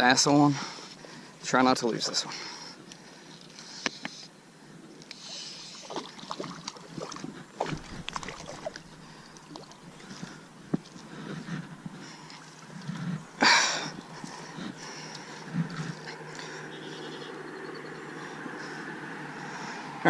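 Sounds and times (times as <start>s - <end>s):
fish splashing at water surface: 5.7s - 9.9s.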